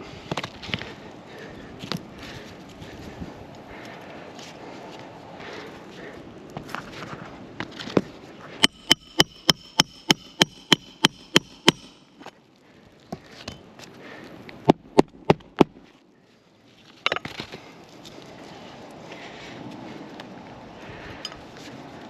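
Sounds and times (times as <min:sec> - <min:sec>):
hammer striking metal bar: 0:08.6 - 0:12.1.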